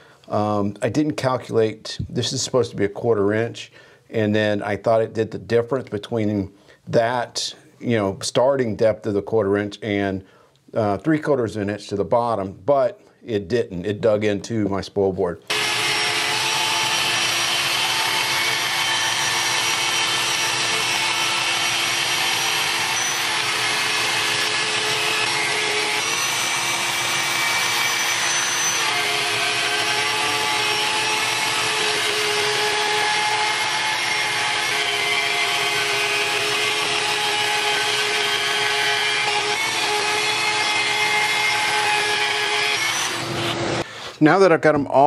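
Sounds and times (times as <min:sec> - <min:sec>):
router machining wood whine: 0:15.5 - 0:43.8.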